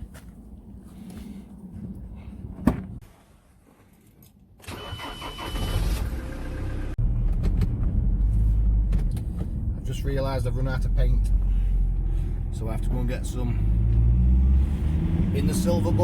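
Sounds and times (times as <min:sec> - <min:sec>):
car engine starting and idling: 0:04.6 - 0:16.0.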